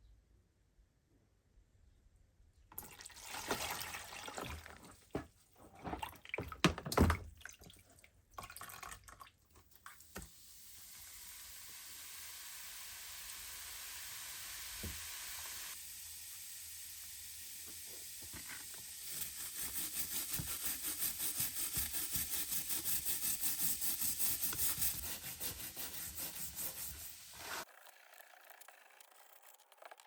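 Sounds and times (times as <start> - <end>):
brush scrubbing metal: 18.9 - 27.7.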